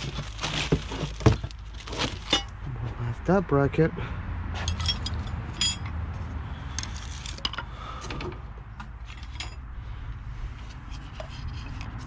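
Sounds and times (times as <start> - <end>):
metal tools clicking and knocking: 4.6 - 6.0.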